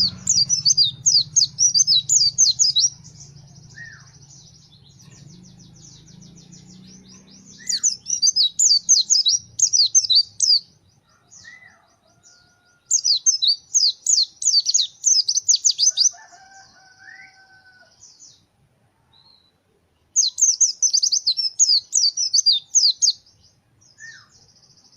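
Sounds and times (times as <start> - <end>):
bird twittering: 0.0 - 10.7
lower whistled bird call: 7.6 - 10.6, 24.0 - 24.3.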